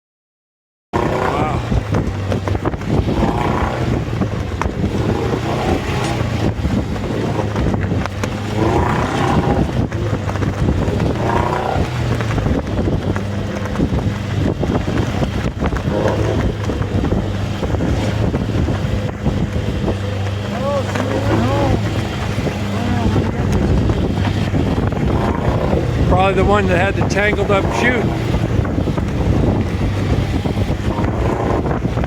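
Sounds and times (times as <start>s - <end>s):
faint voices: 1.0s - 1.9s, 19.7s - 28.5s
boat engine humming: 1.0s - 32.0s
wind buffeting microphone: 1.0s - 32.0s.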